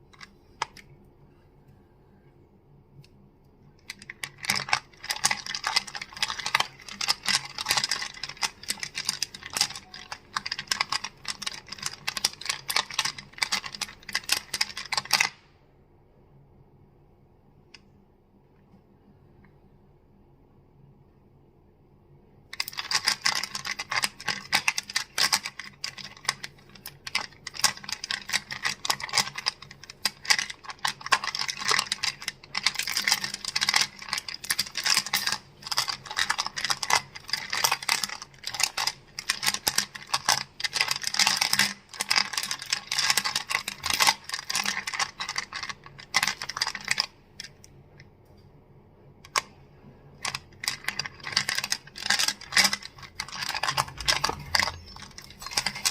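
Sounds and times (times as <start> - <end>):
crystals clacking together: 3.9 - 15.3, 22.6 - 47.1, 50.2 - 55.9.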